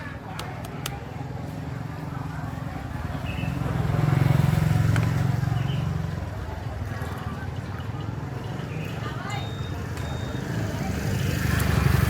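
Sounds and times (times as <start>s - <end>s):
motorbike passing by: 1.7s - 7.6s, 10.4s - 12.0s.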